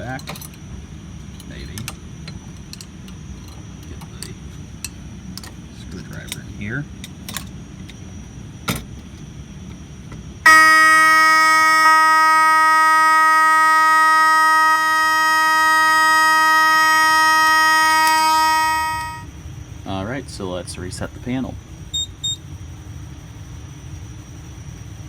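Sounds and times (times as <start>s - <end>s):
fire alarm horn buzzing: 10.4s - 19.4s.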